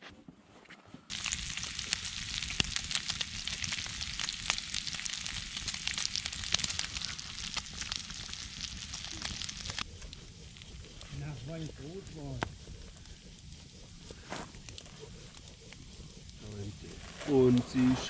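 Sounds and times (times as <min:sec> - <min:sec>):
campfire crackling and popping: 0:01.1 - 0:18.0.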